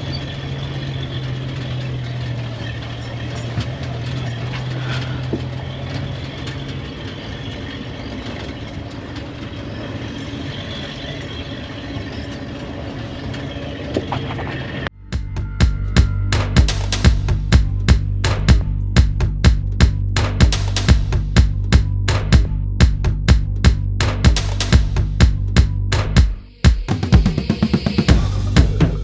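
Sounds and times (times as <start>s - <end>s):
vehicle engine running: 0.0s - 11.5s, 14.7s - 29.0s
rattles and knocks: 0.2s - 9.5s, 15.2s - 26.3s.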